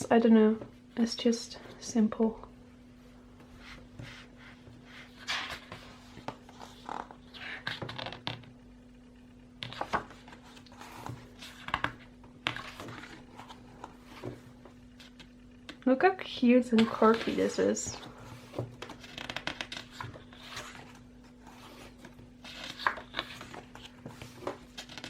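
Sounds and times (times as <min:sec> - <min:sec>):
faint hum: 0:00.0 - 0:25.0
pages turning: 0:04.9 - 0:08.4, 0:09.6 - 0:15.3, 0:16.8 - 0:25.0
paper and plastic rustling: 0:09.6 - 0:15.3.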